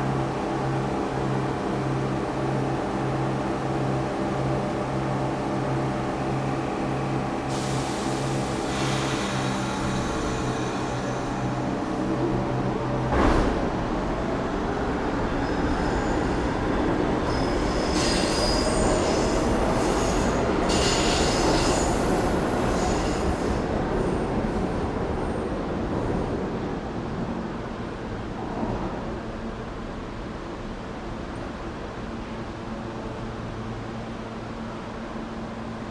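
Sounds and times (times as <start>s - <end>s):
subway train rumbling on rails: 0.0s - 35.9s
high-pitched wheel squeal: 17.3s - 23.4s.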